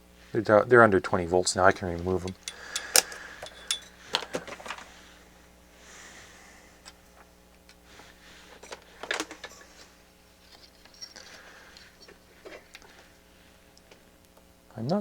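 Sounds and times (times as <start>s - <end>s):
faint steady hum: 0.0s - 15.0s
tools clicking and clattering: 1.7s - 4.8s, 10.4s - 13.0s.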